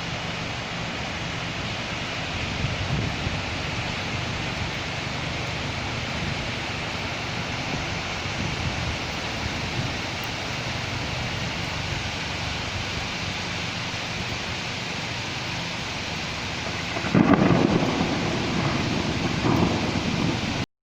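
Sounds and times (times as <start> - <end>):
steady rain falling: 0.0 - 20.7
loud low rumble: 16.8 - 20.6.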